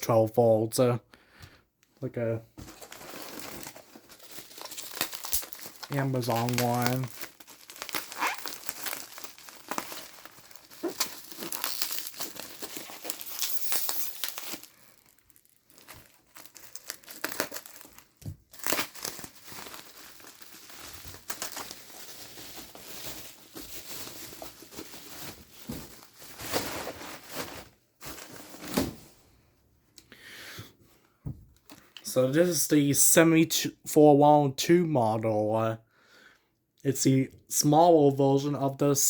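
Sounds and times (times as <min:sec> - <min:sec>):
plastic packaging crinkling: 0:02.6 - 0:29.0.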